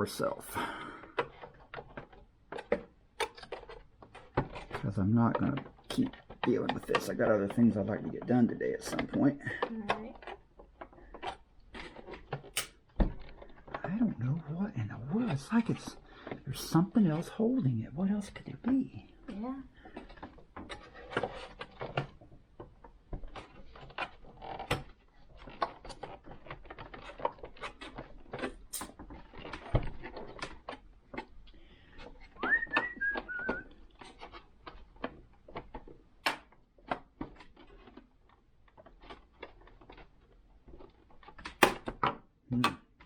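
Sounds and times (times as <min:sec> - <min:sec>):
plastic parts clicking and knocking: 0:00.0 - 0:43.0
high whistle of falling notes: 0:32.4 - 0:33.6.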